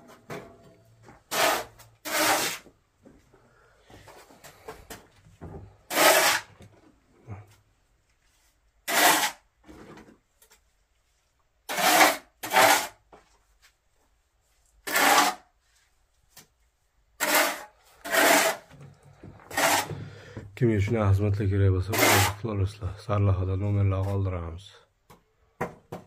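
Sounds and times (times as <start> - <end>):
rough rasping scrapes: 1.3 - 2.7, 5.9 - 6.6, 8.8 - 9.4, 11.7 - 13.0, 14.8 - 15.5, 17.2 - 18.7, 19.5 - 20.1, 21.9 - 22.4.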